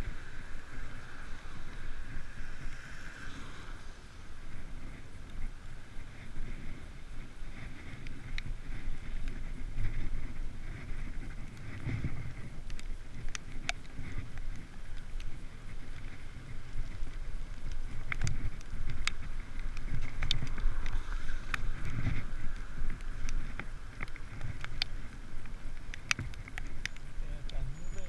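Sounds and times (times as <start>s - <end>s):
wind buffeting microphone: 0.0s - 28.0s
sharp clicks and ticks: 11.3s - 15.4s, 16.8s - 28.0s.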